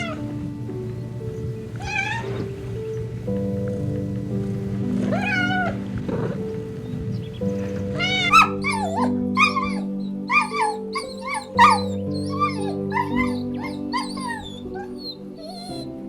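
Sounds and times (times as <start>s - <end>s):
calm background music: 0.0s - 16.0s
high wavering animal cries: 1.8s - 2.5s, 5.1s - 5.8s, 8.0s - 15.9s.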